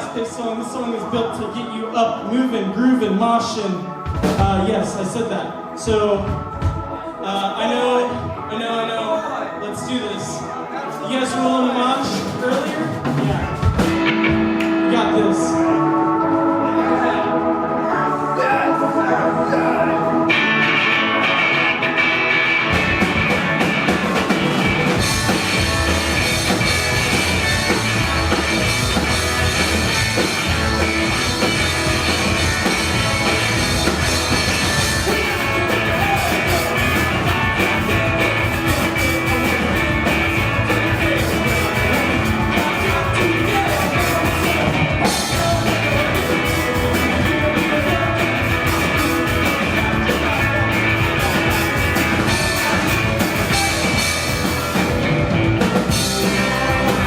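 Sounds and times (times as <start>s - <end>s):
live rock band playing: 3.8s - 7.2s, 12.0s - 57.0s
drum kit: 3.9s - 4.9s, 12.0s - 16.4s, 18.7s - 57.0s
electric guitar: 12.2s - 57.0s.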